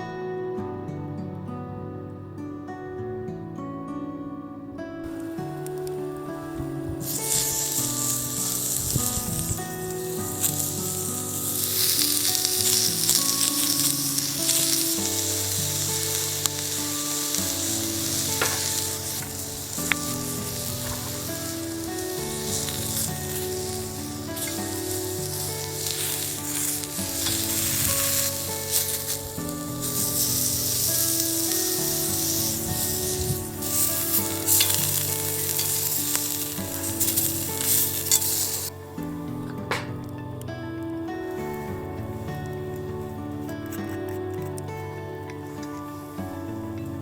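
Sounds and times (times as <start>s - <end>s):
background music: 0.0s - 47.0s
food sizzling in a pan: 5.1s - 40.0s.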